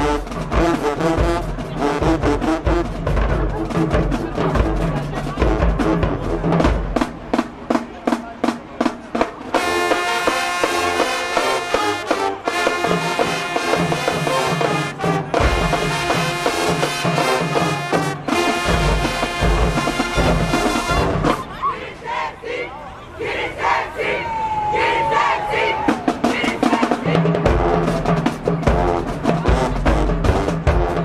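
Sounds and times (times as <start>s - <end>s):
brass chords: 0.0s - 8.2s, 8.8s - 21.5s, 26.2s - 31.0s
marching band drums: 0.0s - 21.5s, 25.5s - 31.0s.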